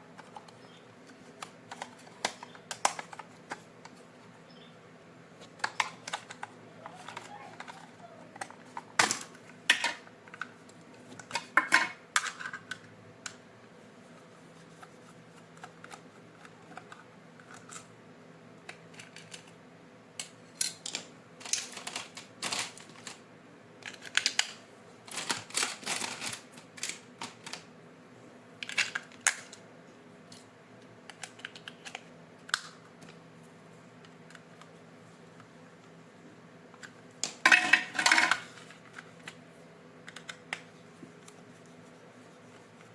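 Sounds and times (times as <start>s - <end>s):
faint steady hum: 0.0s - 42.9s
hands handling plastic packaging: 5.4s - 12.8s, 20.5s - 23.2s, 23.8s - 27.7s.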